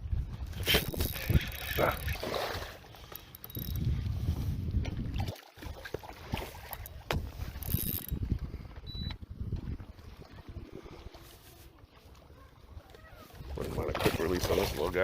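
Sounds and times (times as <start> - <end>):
wind rumble on microphone: 0.0 - 2.8, 3.5 - 11.6.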